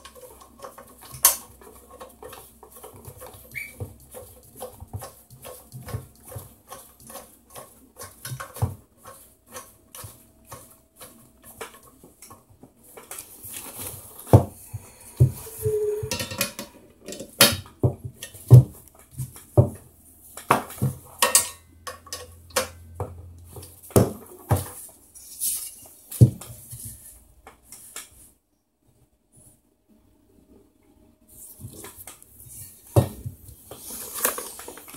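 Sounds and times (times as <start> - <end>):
packaging rustling: 33.6 - 34.9.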